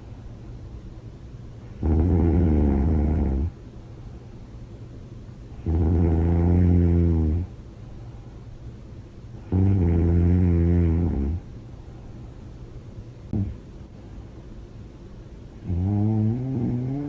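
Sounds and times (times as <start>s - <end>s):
woman snoring loudly: 1.8s - 3.5s, 15.7s - 17.0s.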